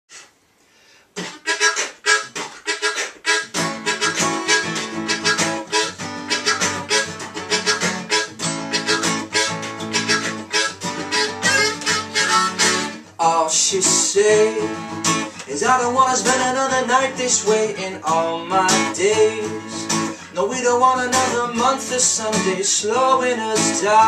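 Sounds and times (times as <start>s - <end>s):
harmonica playing: 1.2s - 13.1s, 14.4s - 20.2s
acoustic guitar strumming: 1.2s - 24.0s.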